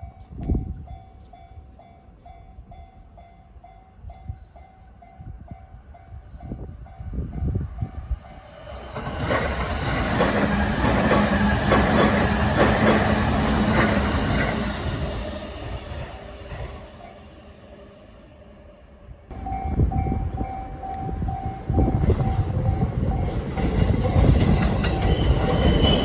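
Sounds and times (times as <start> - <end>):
train low hum: 0.0 - 26.0
train wheels clattering over rail joints: 9.0 - 14.7.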